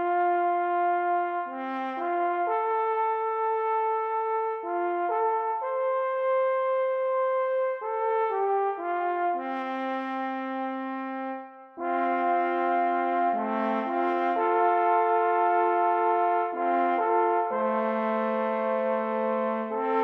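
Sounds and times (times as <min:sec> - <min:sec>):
brass instruments playing chords: 0:07.0 - 0:20.0.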